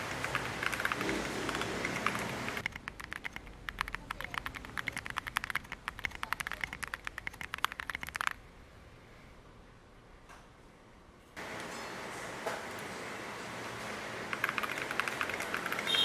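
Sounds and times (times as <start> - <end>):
mechanical keyboard typing: 0.0 - 8.4, 14.3 - 16.0.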